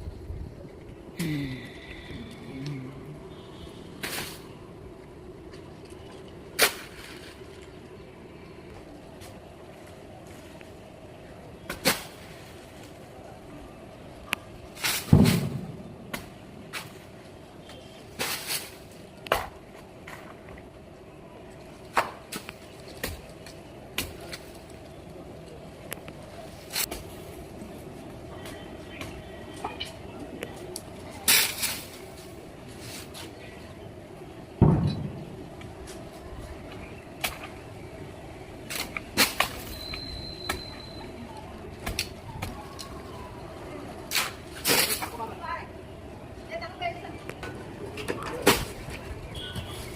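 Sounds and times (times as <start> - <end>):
heavy thud: 34.6 - 35.3.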